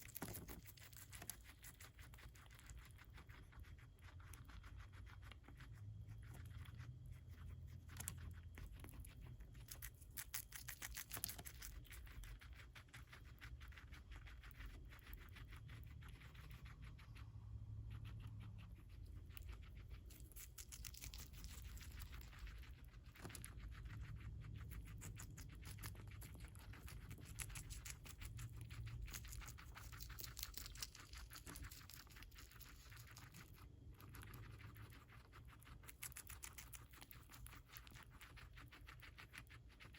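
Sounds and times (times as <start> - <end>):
guinea pig chewing lettuce: 0.0 - 39.9.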